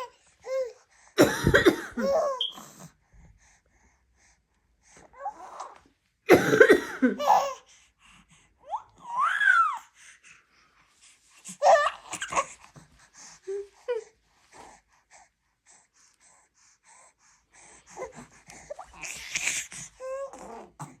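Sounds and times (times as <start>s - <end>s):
baby cooing and squealing: 5.2s - 5.8s, 8.7s - 9.9s, 11.6s - 12.6s, 18.8s - 20.9s.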